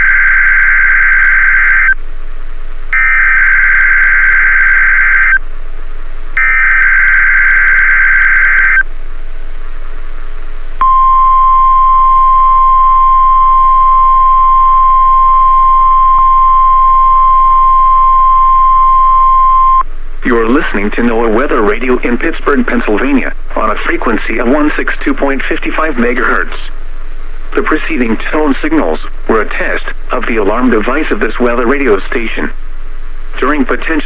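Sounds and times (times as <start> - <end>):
harsh buzzing data burst: 0.0 - 2.0, 2.9 - 5.4, 6.4 - 8.9
radio hiss: 0.0 - 2.0, 3.0 - 5.4, 6.4 - 8.8, 18.6 - 34.0
steady single-pitch alarm tone: 0.0 - 2.0, 2.9 - 5.4, 6.4 - 8.8, 10.8 - 19.8.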